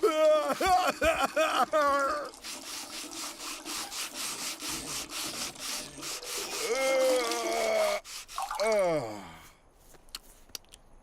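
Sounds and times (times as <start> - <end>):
rhythmic rasping scrape: 2.4 - 7.1, 7.9 - 8.5.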